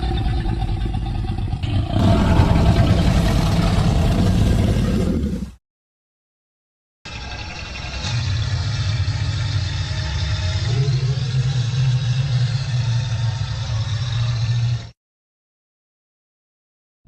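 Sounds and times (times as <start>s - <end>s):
low creature rumble: 0.0s - 5.6s, 8.0s - 15.0s.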